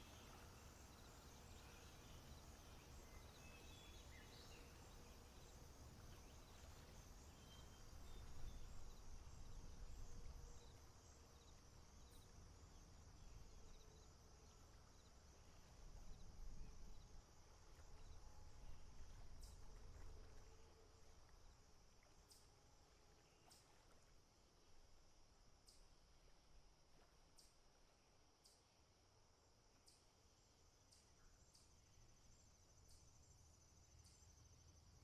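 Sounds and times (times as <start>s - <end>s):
high insect drone: 0.0s - 15.5s
faint chirps and clicks: 29.7s - 30.2s, 30.8s - 31.9s.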